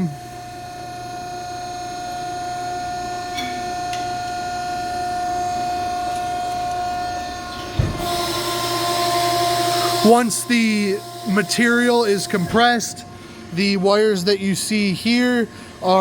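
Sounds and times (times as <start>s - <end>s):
hydraulic unit humming and whining: 0.0s - 16.0s
machine clunk: 7.6s - 13.1s
hydraulic hiss: 7.8s - 14.0s.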